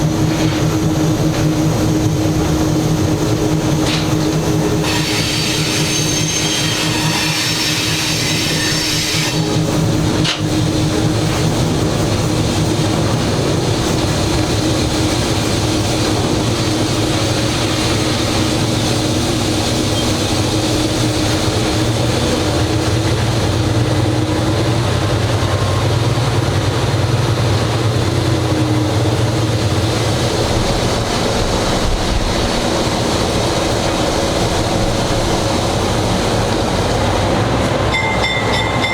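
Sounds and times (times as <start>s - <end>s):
diesel locomotive engine running: 0.0s - 38.9s.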